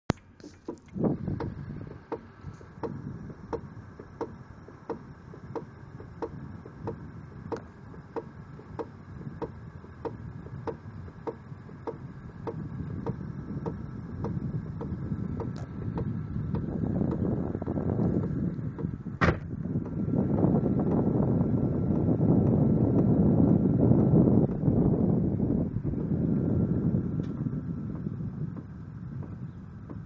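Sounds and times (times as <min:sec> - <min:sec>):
regular ticks: 0:00.1 - 0:19.0
low rumble: 0:00.1 - 0:30.0.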